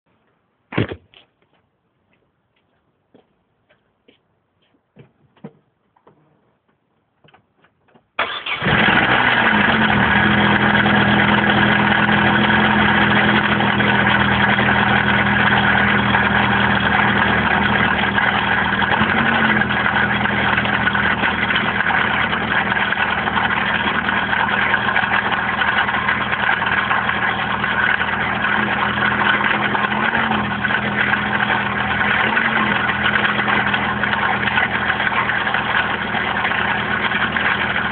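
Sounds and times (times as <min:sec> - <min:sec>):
car engine starting and idling: 0:07.9 - 0:37.9.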